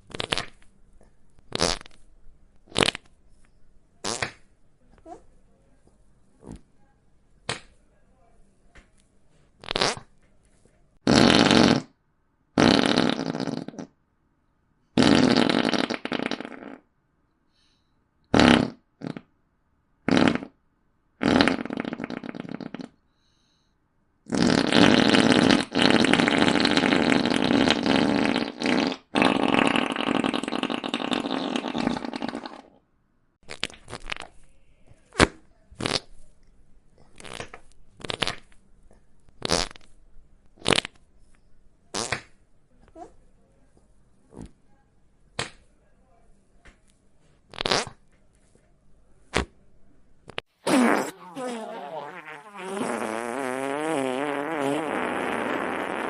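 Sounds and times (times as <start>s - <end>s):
fart sound effects: 0.1s - 0.6s, 1.5s - 2.0s, 2.7s - 3.1s, 4.0s - 4.4s, 9.6s - 10.1s, 11.0s - 11.9s, 12.6s - 13.9s, 15.0s - 16.8s, 18.3s - 19.3s, 20.1s - 20.6s, 21.2s - 23.0s, 24.3s - 32.8s, 33.4s - 34.4s, 35.2s - 36.2s, 37.2s - 38.5s, 39.4s - 39.9s, 40.6s - 41.0s, 41.9s - 42.4s, 47.5s - 48.0s, 49.3s - 49.5s, 50.3s - 56.0s.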